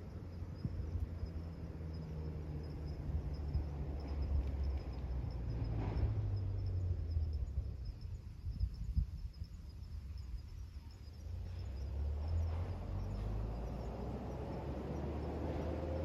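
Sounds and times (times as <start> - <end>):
wind buffeting microphone: 3.2 - 16.0.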